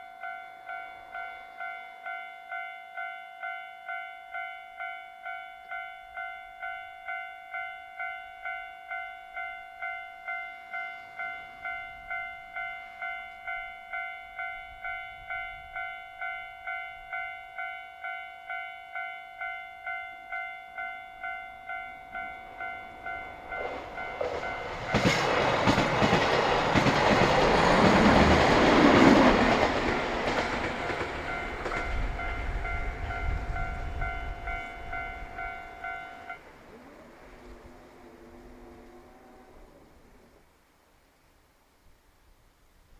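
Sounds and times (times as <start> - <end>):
diesel train passing: 18.1 - 40.4
train wheels on rails: 22.1 - 39.1.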